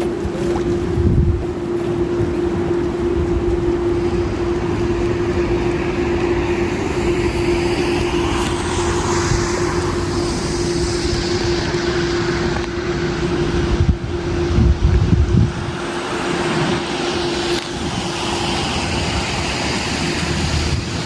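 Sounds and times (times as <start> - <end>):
engine hum: 0.0 - 21.0
road noise: 0.0 - 21.0
vehicle passing: 4.2 - 12.6.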